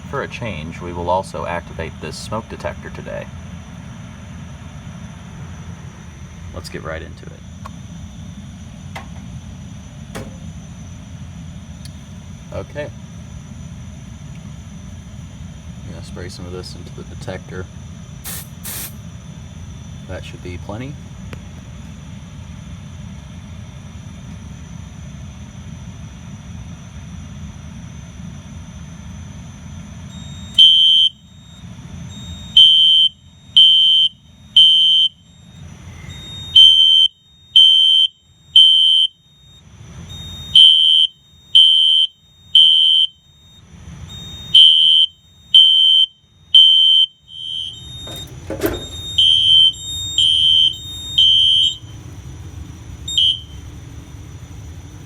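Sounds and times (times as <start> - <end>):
steady low hum: 0.0 - 32.6, 47.4 - 55.0
fire alarm horn beeping: 18.1 - 20.4, 30.0 - 53.7.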